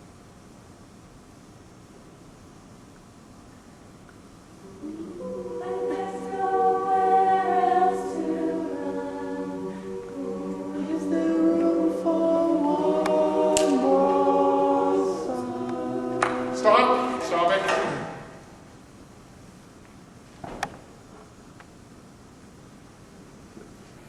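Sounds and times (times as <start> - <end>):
choir singing: 4.6 - 18.0.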